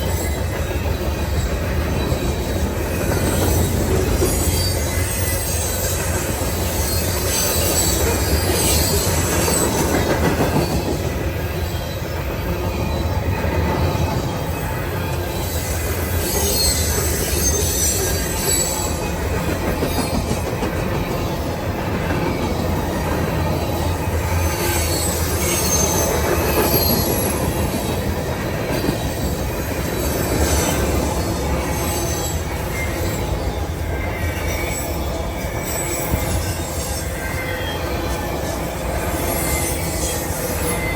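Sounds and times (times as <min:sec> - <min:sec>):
freight train wheels rumbling: 0:00.0 - 0:40.9
high-pitched wheel squeal: 0:03.2 - 0:10.0.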